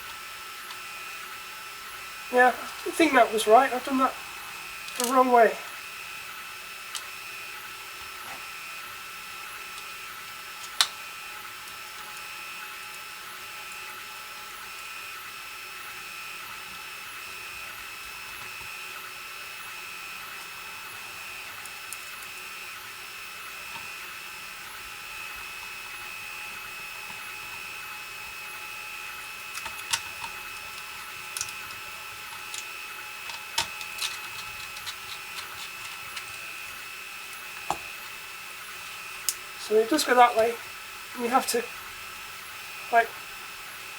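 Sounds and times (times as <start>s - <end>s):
high-pitched electrical whine: 0.0s - 43.9s
plastic parts clicking into place: 4.9s - 5.2s.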